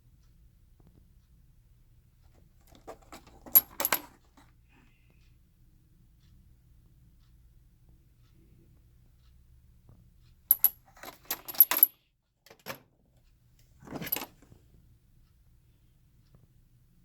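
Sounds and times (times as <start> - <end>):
plastic parts clicking and clattering: 2.6 - 4.4, 10.5 - 11.9, 12.5 - 12.9, 13.8 - 14.5.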